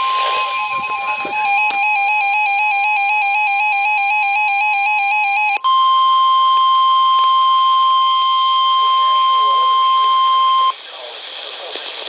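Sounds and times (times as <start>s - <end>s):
radio alert warble: 0.0s - 5.6s, 8.0s - 10.8s
steady high warning beep: 0.0s - 10.8s.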